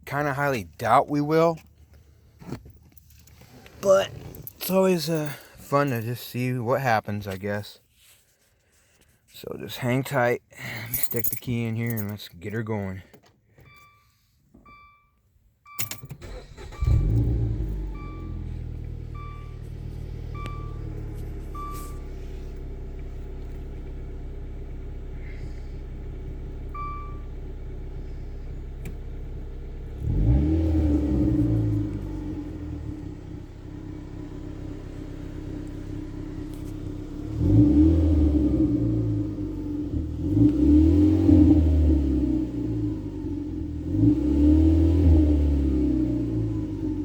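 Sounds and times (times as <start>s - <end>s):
dashboard warning chime beeping: 13.5s - 22.1s, 26.7s - 27.3s
car engine starting and revving: 15.7s - 47.0s.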